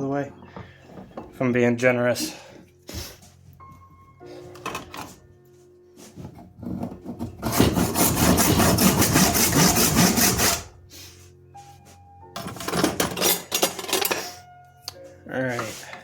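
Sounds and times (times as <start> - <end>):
hand saw sawing wood: 6.7 - 10.7.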